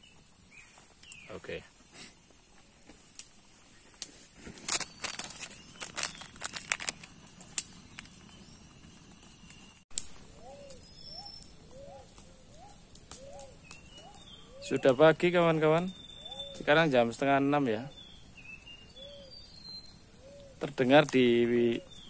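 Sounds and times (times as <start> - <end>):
campfire crackling: 0.0 - 22.0
animal calling: 10.4 - 15.0.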